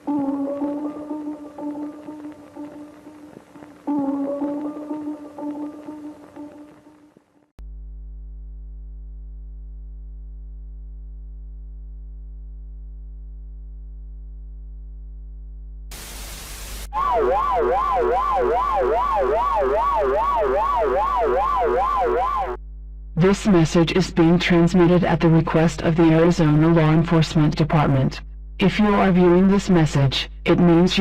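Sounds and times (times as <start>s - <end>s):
warbling electronic alarm tone: 0.0s - 2.9s, 16.9s - 22.6s
low electronic hum: 0.0s - 31.0s
burst of static: 15.9s - 22.6s.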